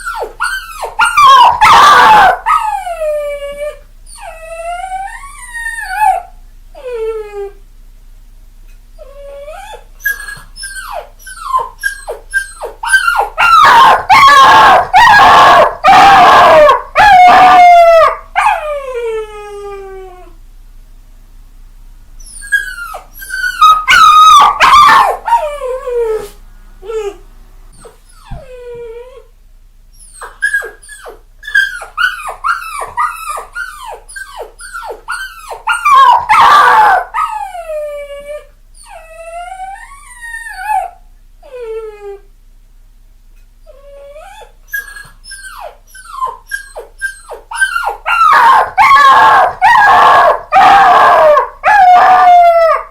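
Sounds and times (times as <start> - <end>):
puppies crying and whining: 0.0 - 7.4, 9.0 - 20.0, 22.2 - 27.2, 27.8 - 29.3, 30.0 - 42.1, 43.7 - 52.9.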